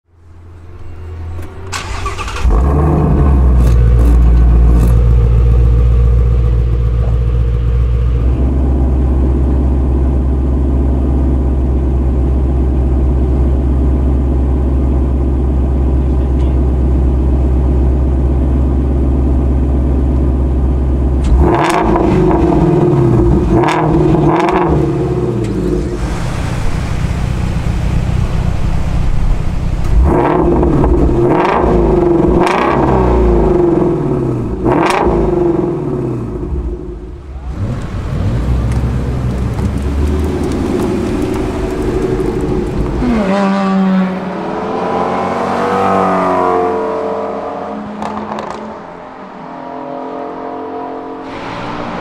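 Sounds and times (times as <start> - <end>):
car engine idling: 0.2 - 44.4
car starter cranking: 1.4 - 5.1
engine revving: 1.7 - 9.8, 21.2 - 27.8, 29.8 - 52.0.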